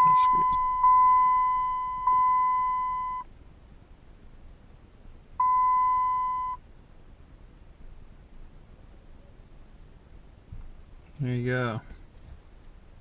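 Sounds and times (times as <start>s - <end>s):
high-pitched electronic beeps: 0.0s - 3.3s.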